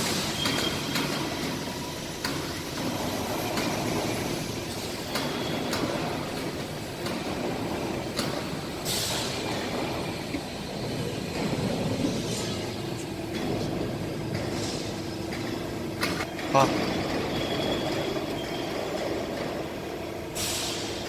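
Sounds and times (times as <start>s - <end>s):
air hissing: 8.3s - 11.3s, 12.0s - 13.2s, 14.5s - 15.2s, 20.4s - 21.0s.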